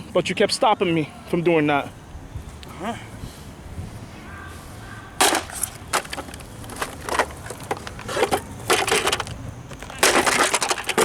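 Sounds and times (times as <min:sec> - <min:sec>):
junk being smashed: 0:05.2 - 0:11.0.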